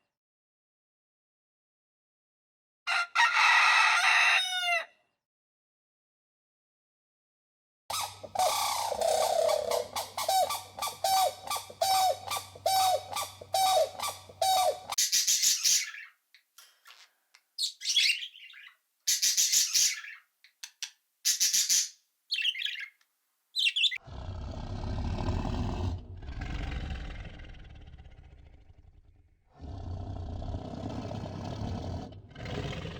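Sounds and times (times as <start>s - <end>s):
high chirps and squeaks: 7.9s - 16.1s, 16.8s - 23.0s, 23.6s - 24.0s
birds calling: 7.9s - 16.2s, 16.9s - 23.0s, 23.6s - 24.0s
deep rough animal sound: 24.0s - 32.9s.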